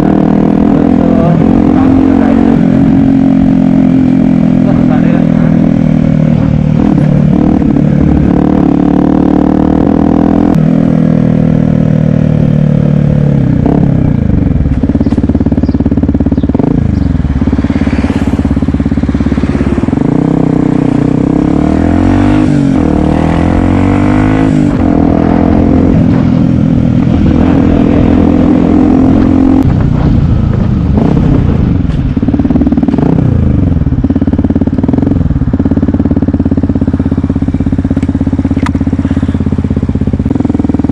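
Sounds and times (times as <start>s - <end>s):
motorcycle engine revving: 0.0s - 40.9s.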